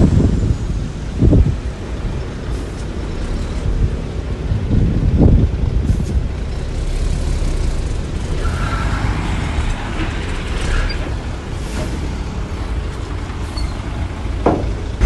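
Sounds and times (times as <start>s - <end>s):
diesel earthmoving machinery: 0.0s - 15.0s
faint high squeals: 13.5s - 13.9s.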